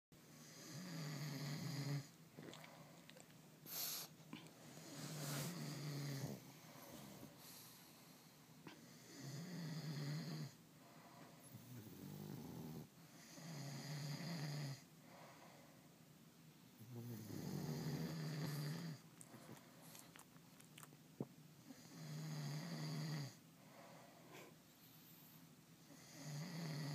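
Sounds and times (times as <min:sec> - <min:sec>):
softer lower snores: 0:00.3 - 0:14.9, 0:16.8 - 0:20.2, 0:21.6 - 0:26.9
loud drawn-out snore: 0:00.4 - 0:02.1, 0:04.8 - 0:06.4, 0:08.9 - 0:10.6, 0:11.5 - 0:14.9, 0:16.8 - 0:19.0, 0:21.7 - 0:23.4, 0:25.9 - 0:26.9.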